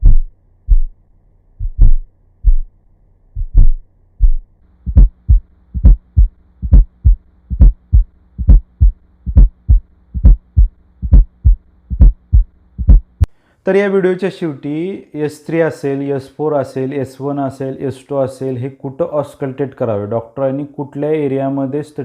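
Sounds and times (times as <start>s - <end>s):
heartbeat thuds through stethoscope: 0.0s - 1.0s, 1.6s - 2.7s, 3.4s - 13.3s
faint steady hum: 0.0s - 22.0s.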